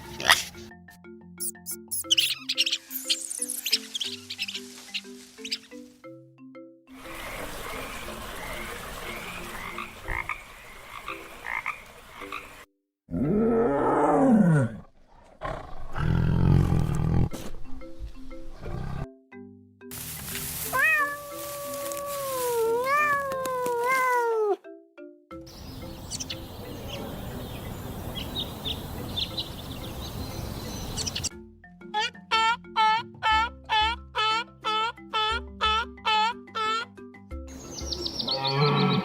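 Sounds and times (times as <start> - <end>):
light melody: 0.0 - 10.3, 17.4 - 39.0
repeated chirps: 1.4 - 5.7
animal call rising and falling: 20.7 - 24.6
long wavering animal call: 21.0 - 23.0.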